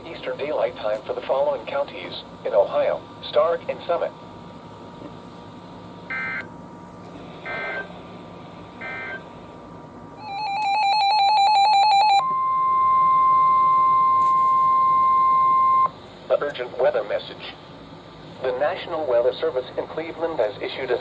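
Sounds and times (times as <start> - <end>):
steady warning alarm tone: 6.1 - 6.5, 7.4 - 8.0, 8.8 - 9.3, 10.2 - 16.0
rapid electronic beeping: 7.4 - 7.9.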